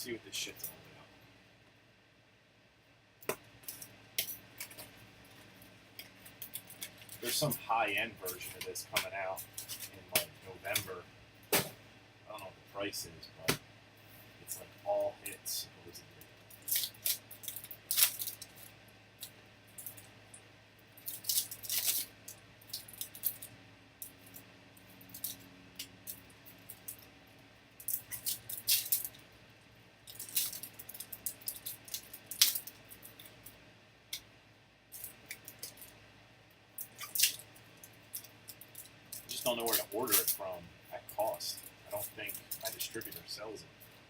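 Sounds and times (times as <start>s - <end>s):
card pack wrappers crinkling and tearing: 16.6s - 18.6s, 21.0s - 22.1s, 30.1s - 33.2s, 38.2s - 40.4s.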